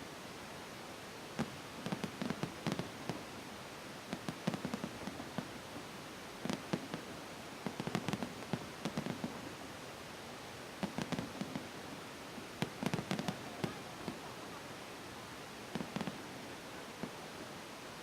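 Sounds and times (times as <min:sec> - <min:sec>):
fireworks crackling pops: 0:01.3 - 0:03.4, 0:04.0 - 0:09.6, 0:10.8 - 0:14.3, 0:15.7 - 0:17.2.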